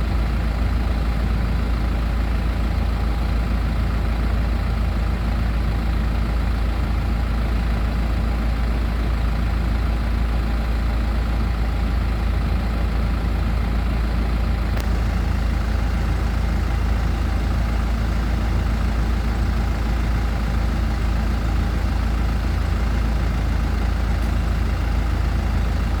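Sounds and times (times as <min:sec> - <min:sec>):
bus diesel engine idling: 0:00.0 - 0:26.0.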